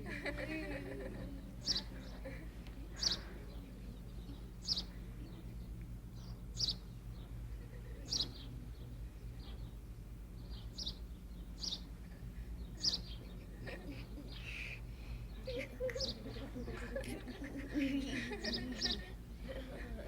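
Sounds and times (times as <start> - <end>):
faint low hum: 0.0 - 20.0.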